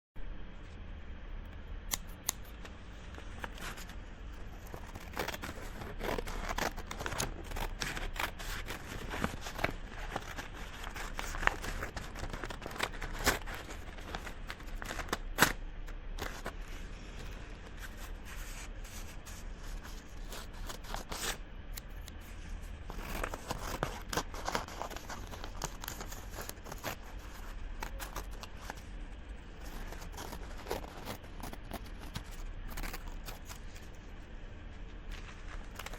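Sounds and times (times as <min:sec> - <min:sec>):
scissors snipping paper: 0:01.9 - 0:02.7, 0:03.4 - 0:15.6, 0:17.8 - 0:22.1, 0:22.9 - 0:28.8, 0:29.6 - 0:34.0
paper rustling: 0:02.6 - 0:15.6, 0:16.2 - 0:34.1, 0:35.1 - 0:35.9.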